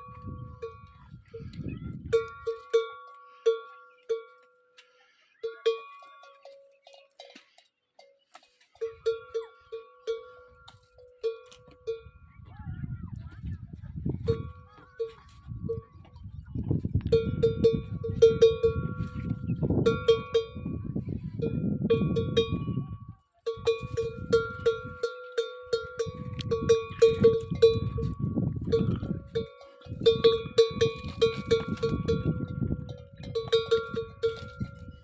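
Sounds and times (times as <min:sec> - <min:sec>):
camel bells clanking: 0:00.0 - 0:12.5, 0:14.2 - 0:35.0.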